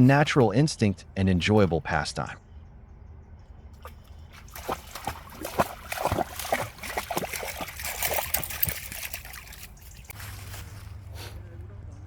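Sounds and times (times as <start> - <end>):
water splashing: 3.8 - 10.2.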